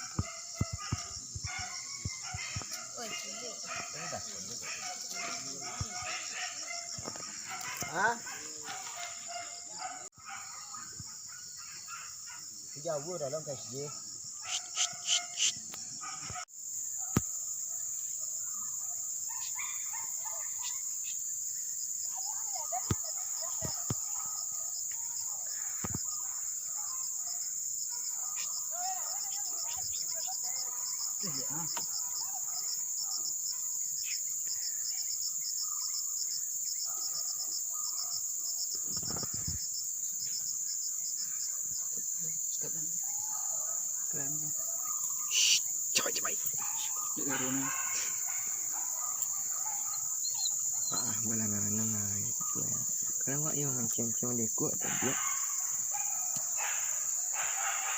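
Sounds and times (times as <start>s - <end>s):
crickets and insects chirping: 0.0s - 57.9s
small birds chirping: 33.6s - 53.6s
short loud calls: 45.3s - 48.2s.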